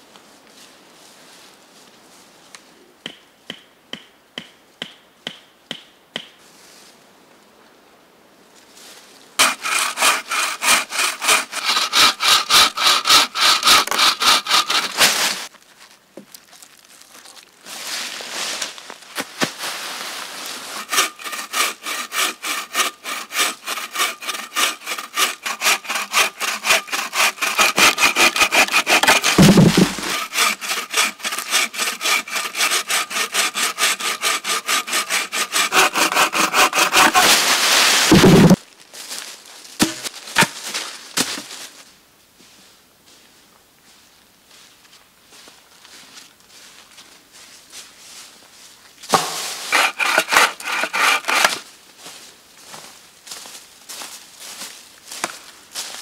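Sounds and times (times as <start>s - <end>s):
hand saw cutting wood: 9.4s - 15.5s, 20.7s - 38.6s, 39.8s - 40.6s, 49.1s - 51.6s.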